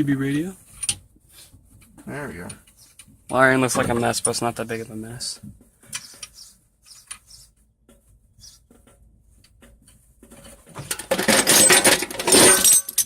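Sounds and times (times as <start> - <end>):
metal tools clattering: 10.4 - 13.0.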